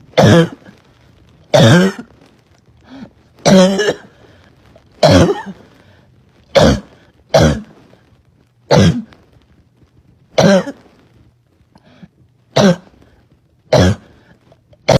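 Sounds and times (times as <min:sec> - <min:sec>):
girl's barking cough: 0:01.5 - 0:02.1, 0:05.0 - 0:05.7, 0:06.5 - 0:07.7, 0:08.7 - 0:09.1, 0:10.4 - 0:10.8, 0:12.6 - 0:12.9, 0:13.7 - 0:14.1.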